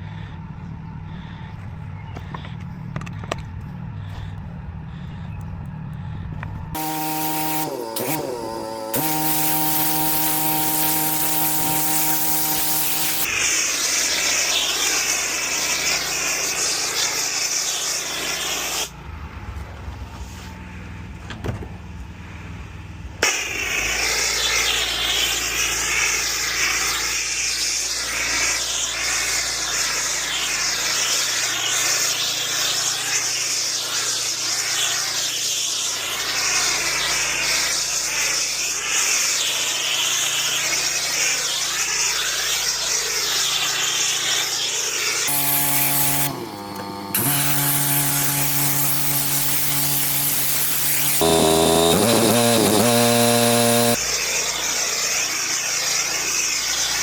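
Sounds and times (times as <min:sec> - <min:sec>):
pressure washer machine humming: 0:06.8 - 0:13.4, 0:45.3 - 0:54.0
pressure washer water jet spraying: 0:06.8 - 0:18.9, 0:45.1 - 0:54.0.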